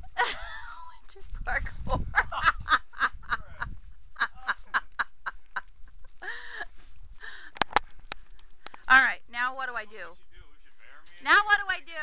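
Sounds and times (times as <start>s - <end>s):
person laughing in bursts: 0.1s - 0.7s, 1.9s - 6.6s.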